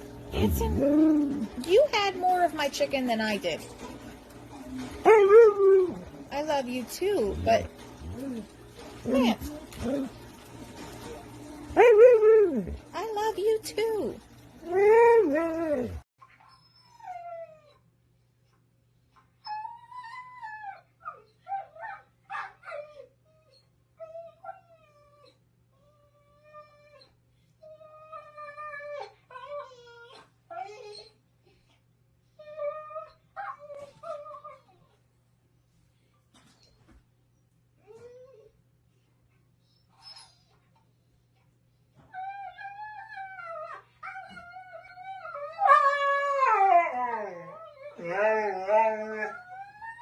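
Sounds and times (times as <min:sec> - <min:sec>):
dog howling and whining: 0:04.4 - 0:06.3, 0:07.3 - 0:10.4, 0:11.0 - 0:12.9, 0:14.6 - 0:17.8, 0:19.4 - 0:31.2, 0:32.4 - 0:34.8, 0:42.1 - 0:50.0
dog howling: 0:14.6 - 0:16.0.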